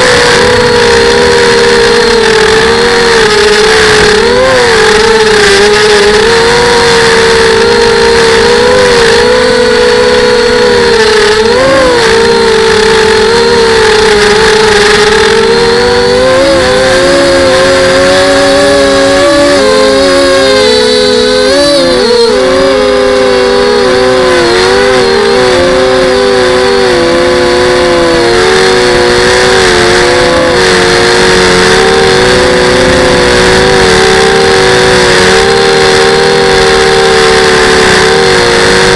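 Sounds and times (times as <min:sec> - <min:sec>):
drone motors whining: 0:00.0 - 0:38.9.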